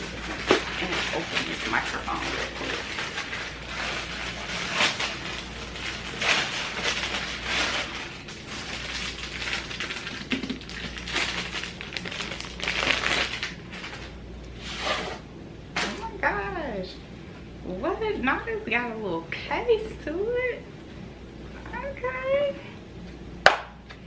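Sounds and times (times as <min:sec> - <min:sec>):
packaging crinkling and rustling: 0:00.0 - 0:15.2
sharp packaging cracks: 0:08.7 - 0:14.0.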